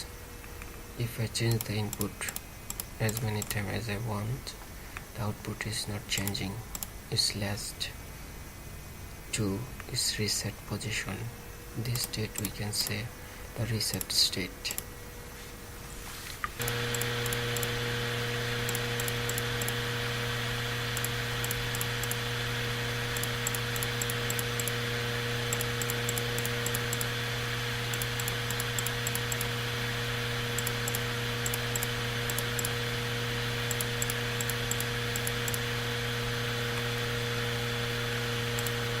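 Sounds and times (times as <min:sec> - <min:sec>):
electrical hum: 0:00.0 - 0:39.0
high crackling clicks: 0:01.5 - 0:03.6, 0:12.0 - 0:13.0, 0:18.6 - 0:19.8, 0:20.9 - 0:22.3, 0:23.1 - 0:24.8, 0:25.4 - 0:27.2, 0:27.9 - 0:29.6, 0:30.5 - 0:32.8, 0:33.6 - 0:35.7, 0:38.5 - 0:38.8.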